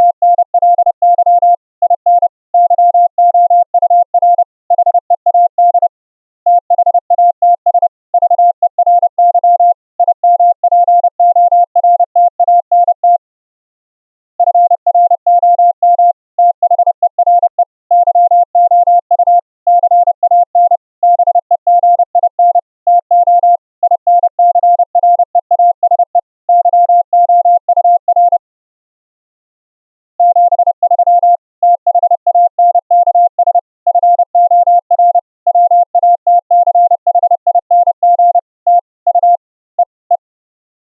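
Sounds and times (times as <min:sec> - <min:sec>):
morse code tone: 0:00.0 - 0:05.9, 0:14.4 - 0:28.4, 0:30.2 - 0:40.3.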